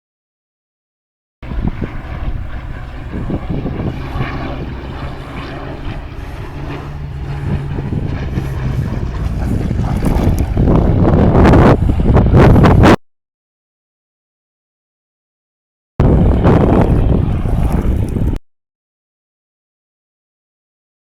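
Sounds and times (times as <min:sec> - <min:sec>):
propeller aircraft engine drone: 0:01.4 - 0:13.0, 0:16.0 - 0:18.4.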